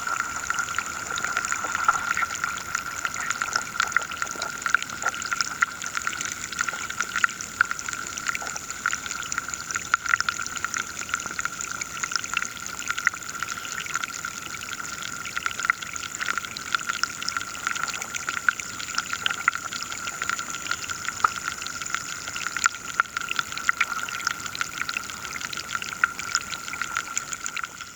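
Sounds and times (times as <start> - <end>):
underwater crackling clicks: 0.1 - 9.3.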